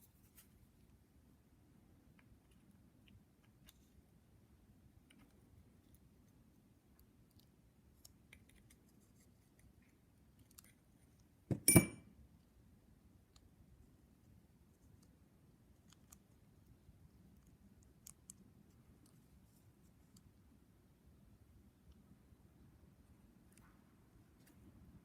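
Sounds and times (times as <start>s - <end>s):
sharp metallic clank: 11.5s - 12.0s.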